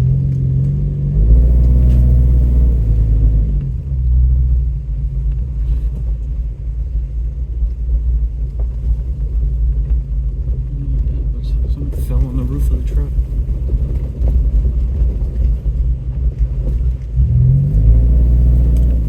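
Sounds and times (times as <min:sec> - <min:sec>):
truck engine revving: 0:00.0 - 0:04.6, 0:16.6 - 0:19.0.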